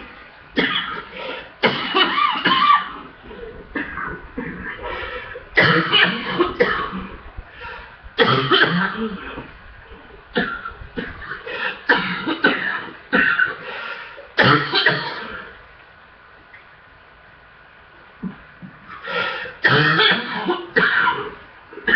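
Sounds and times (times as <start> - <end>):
person coughing heavily: 0.6 - 7.2, 8.2 - 9.5, 10.4 - 13.8, 14.4 - 15.5, 19.0 - 21.9
short breaths: 1.1 - 1.6, 4.7 - 5.5, 7.5 - 8.0, 13.6 - 14.3, 18.9 - 19.6.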